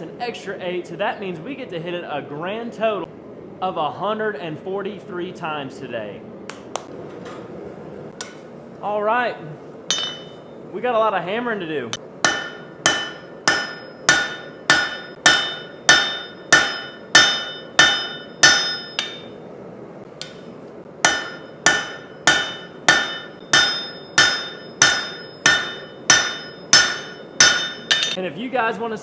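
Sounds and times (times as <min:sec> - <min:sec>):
hammer striking steel: 0:09.9 - 0:10.5, 0:12.2 - 0:19.4, 0:20.2 - 0:28.2.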